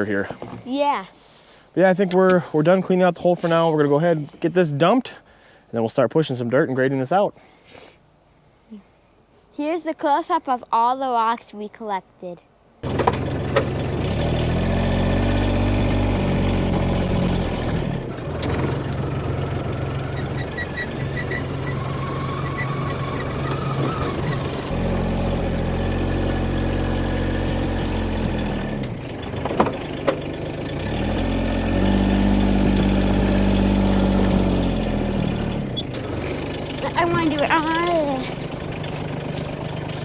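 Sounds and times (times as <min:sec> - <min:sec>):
small engine running under load: 0:12.8 - 0:40.0.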